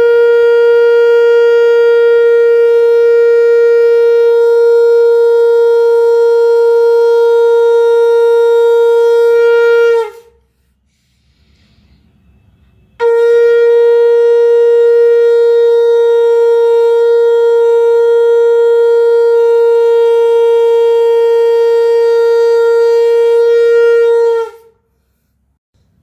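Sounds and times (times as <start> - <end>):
conch shell blown: 0.0 - 25.6.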